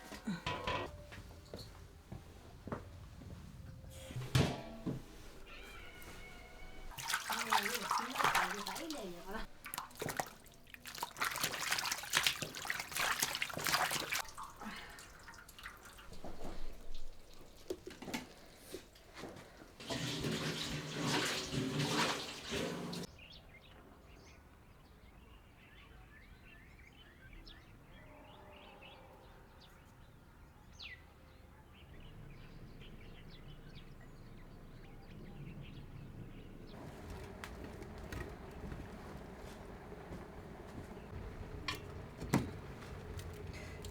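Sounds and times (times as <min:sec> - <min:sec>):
faint birds chirping: 0:00.0 - 0:19.8, 0:23.0 - 0:43.9
water running and splashing: 0:05.0 - 0:19.2, 0:19.8 - 0:23.1, 0:36.7 - 0:43.9.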